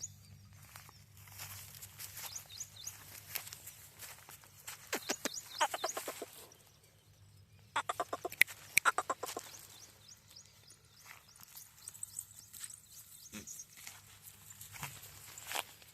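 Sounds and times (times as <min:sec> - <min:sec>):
small birds chirping: 0:00.0 - 0:15.9
chickens clucking: 0:04.8 - 0:06.6, 0:07.8 - 0:09.7.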